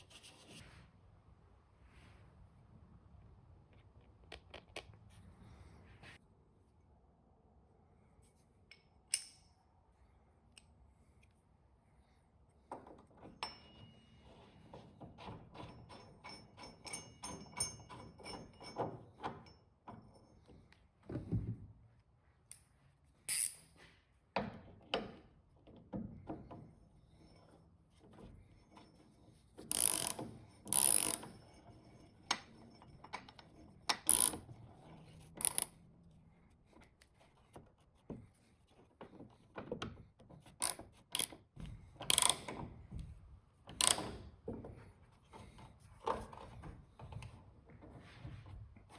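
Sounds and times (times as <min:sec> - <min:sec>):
ratchet wrench clicking: 0:23.3 - 0:23.6, 0:29.7 - 0:31.3, 0:33.9 - 0:34.4, 0:35.4 - 0:35.7, 0:40.6 - 0:41.4, 0:42.1 - 0:42.5.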